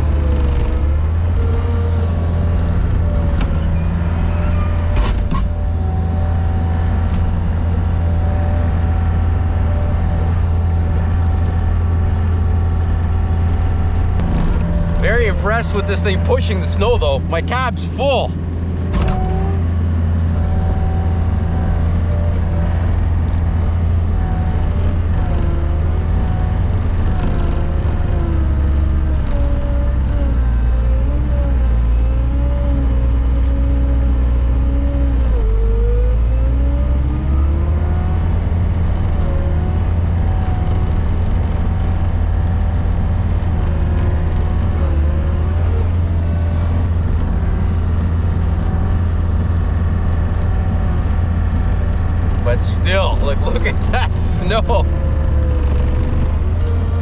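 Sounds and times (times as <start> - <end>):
machine whine wavering in pitch: 0.0 - 17.5
diesel engine droning under load: 0.0 - 57.0.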